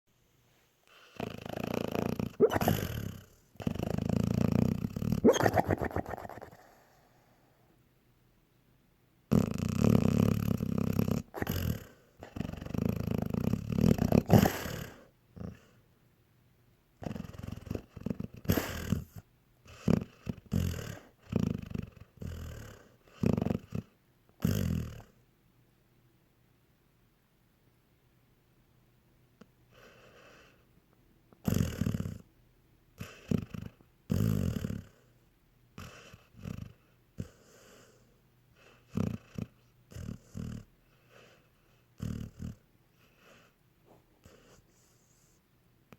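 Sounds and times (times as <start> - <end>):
dog snoring: 0.9 - 7.2, 9.3 - 15.8, 17.0 - 25.2, 29.7 - 30.6, 31.4 - 32.3, 33.0 - 35.2, 35.8 - 45.4.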